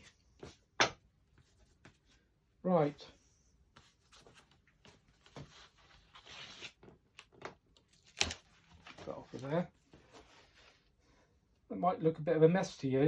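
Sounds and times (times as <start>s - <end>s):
cardboard rustling and scraping: 7.9s - 10.9s.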